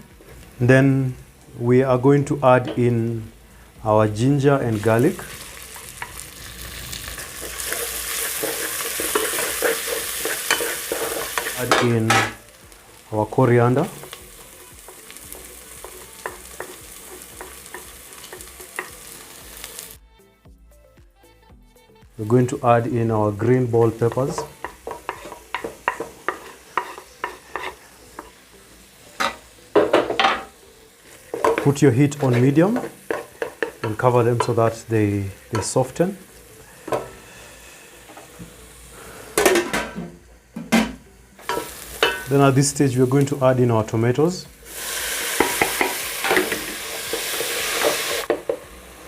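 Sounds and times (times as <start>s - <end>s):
onions sizzling in hot oil: 0.0s - 20.0s, 22.1s - 49.0s
utensil scraping a frying pan: 4.7s - 12.5s, 13.8s - 19.9s, 23.7s - 28.4s, 44.7s - 48.6s
knock against a pan: 39.4s - 41.0s.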